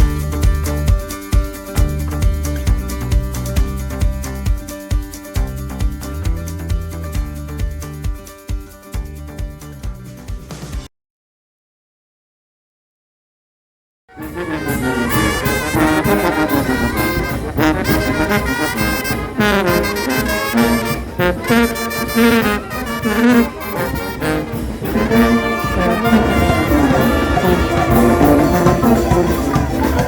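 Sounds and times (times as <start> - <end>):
percussion: 0.0 - 10.9, 14.2 - 30.0
brass band playing: 14.1 - 30.0.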